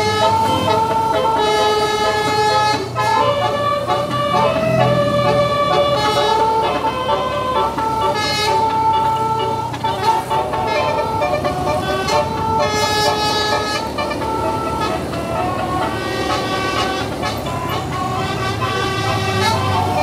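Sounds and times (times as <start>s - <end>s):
air horns playing a tune: 0.0s - 20.0s.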